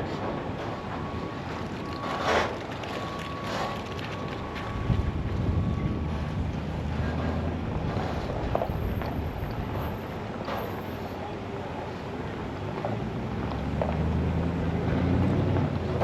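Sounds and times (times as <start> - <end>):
wind buffeting microphone: 4.2 - 10.4.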